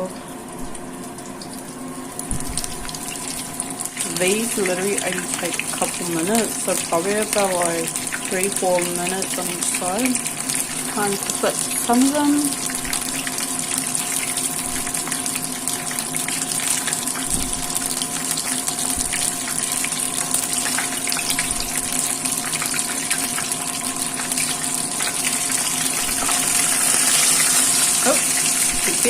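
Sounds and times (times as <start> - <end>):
fish sizzling in hot oil: 2.1 - 29.0.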